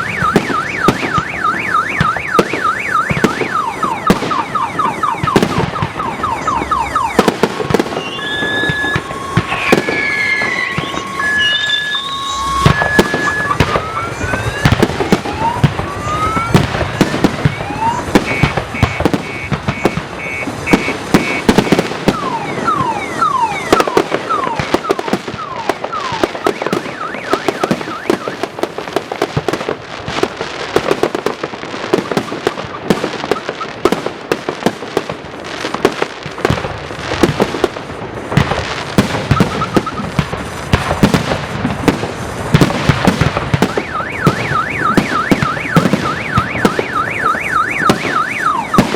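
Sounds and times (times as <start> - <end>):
rising rocket whistles: 0.0 - 28.5, 39.3 - 40.2
fireworks bangs and crackling: 0.0 - 48.9
falling whistles: 7.9 - 14.8, 39.3 - 40.1.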